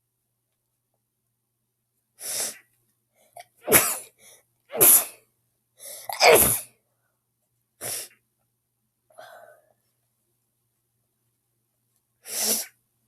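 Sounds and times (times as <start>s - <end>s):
girl sneezing: 3.6s - 4.1s, 4.7s - 5.2s, 6.0s - 6.7s.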